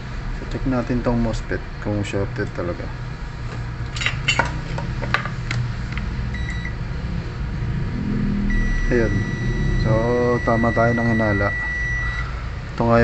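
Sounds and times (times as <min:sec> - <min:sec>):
constant low hum: 0:00.0 - 0:13.0
multimeter continuity beeps: 0:06.3 - 0:06.8, 0:08.5 - 0:12.3.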